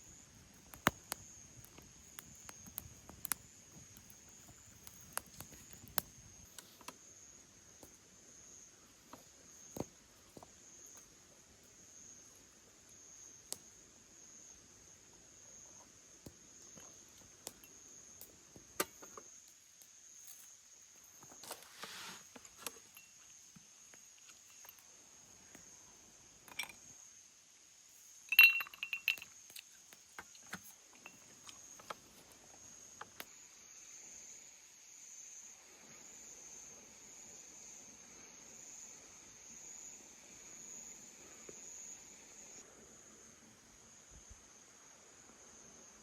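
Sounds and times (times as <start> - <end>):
insects chirring: 0.0 - 46.0
sharp ringing clink: 28.3 - 29.3.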